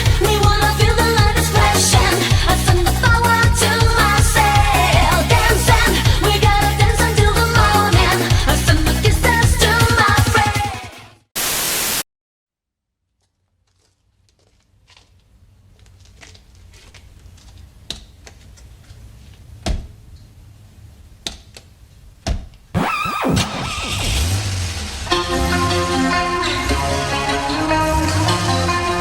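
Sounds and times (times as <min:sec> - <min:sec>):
burst of static: 0:11.4 - 0:12.1, 0:22.8 - 0:26.1.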